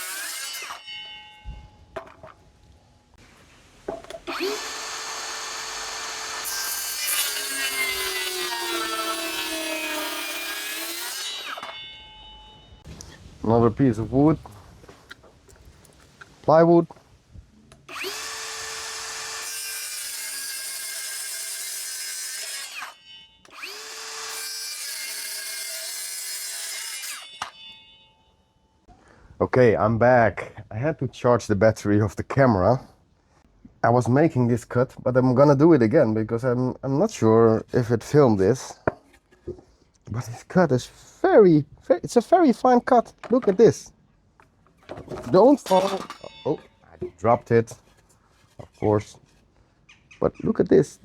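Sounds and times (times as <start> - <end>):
circular saw cutting wood: 0.0 - 1.2, 4.2 - 12.0, 17.9 - 28.1, 45.2 - 46.6.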